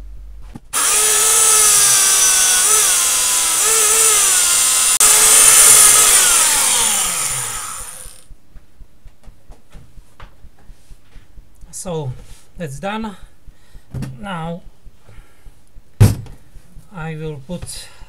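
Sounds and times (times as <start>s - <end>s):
electric grinder grinding metal: 0.7s - 8.3s.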